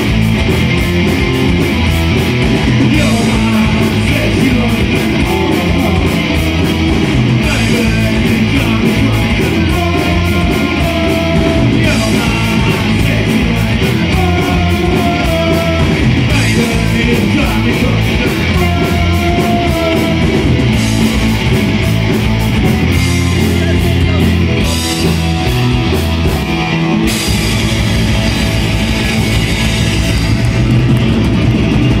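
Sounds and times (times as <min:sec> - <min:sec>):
distorted electric guitar: 0:00.0 - 0:32.0
drum beat: 0:00.0 - 0:32.0
person singing: 0:02.8 - 0:21.1.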